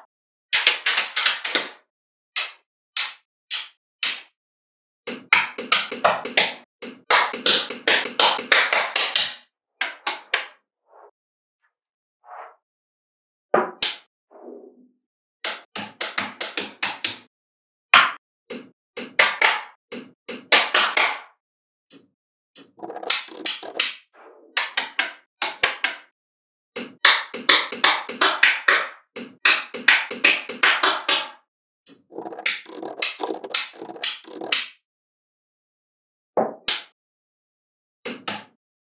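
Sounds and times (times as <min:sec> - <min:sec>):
magnetic balls clicking: 0:05.1 - 0:08.6, 0:21.9 - 0:23.9, 0:31.9 - 0:34.7.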